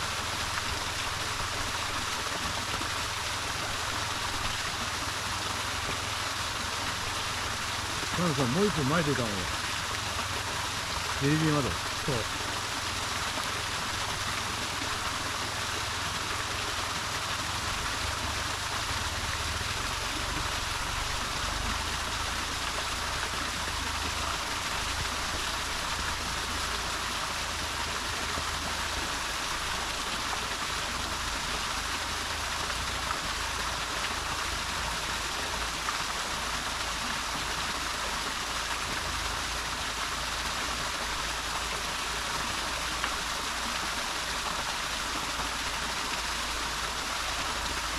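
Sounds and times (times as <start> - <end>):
water rushing over rocks: 0.0 - 47.9.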